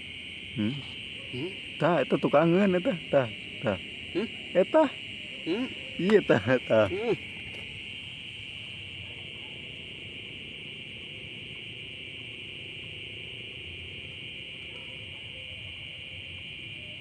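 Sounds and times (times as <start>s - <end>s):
crickets trilling: 0.0s - 17.0s.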